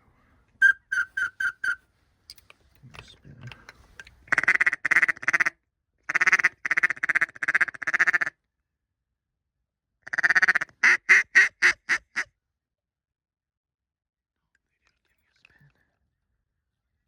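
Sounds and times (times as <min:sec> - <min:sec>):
duck call quacks: 0:04.3 - 0:05.5, 0:06.1 - 0:08.3, 0:10.1 - 0:12.3.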